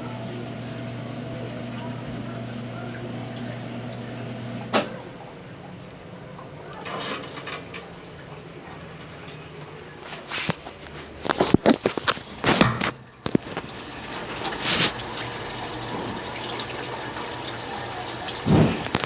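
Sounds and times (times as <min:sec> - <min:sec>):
low motor hum: 0:00.0 - 0:06.7
washing machine water sloshing: 0:00.0 - 0:19.0.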